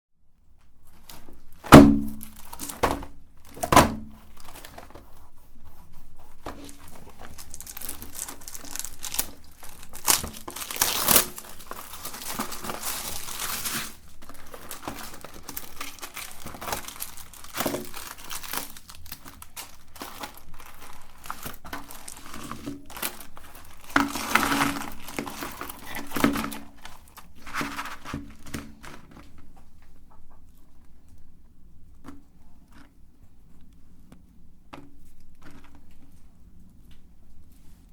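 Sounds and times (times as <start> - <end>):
plastic wrappers crinkling and tearing: 0.9 - 5.2, 6.2 - 30.6.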